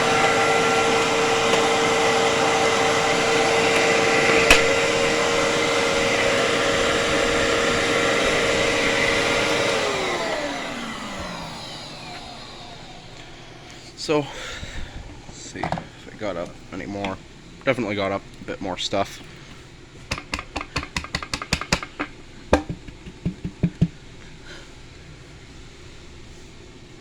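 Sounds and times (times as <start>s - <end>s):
vacuum cleaner motor whine: 0.0s - 17.2s.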